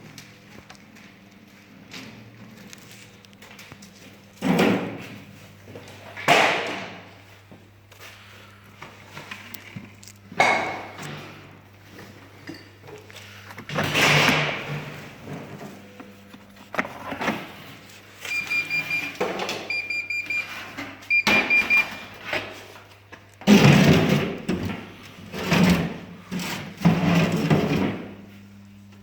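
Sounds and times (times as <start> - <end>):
rapid high beeps: 21.1 - 22.0.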